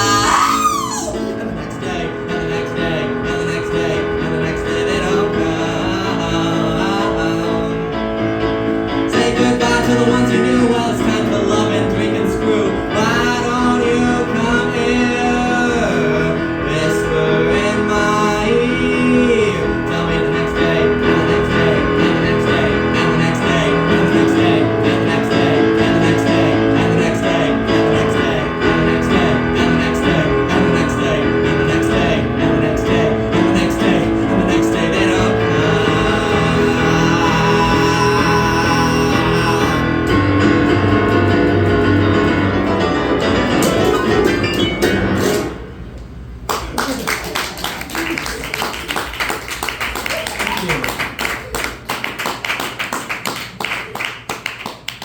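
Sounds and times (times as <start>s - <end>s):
person singing show tune: 0.0s - 8.1s, 9.1s - 40.4s
keyboard accompaniment: 0.0s - 46.5s.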